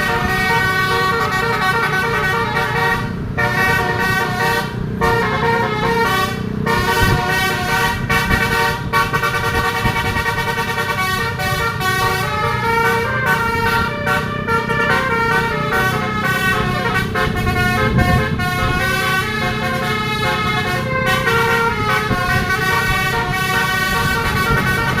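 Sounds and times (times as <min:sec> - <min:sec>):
multi-tone bus horn melody: 0:00.0 - 0:25.0
steady low rumble: 0:00.0 - 0:25.0.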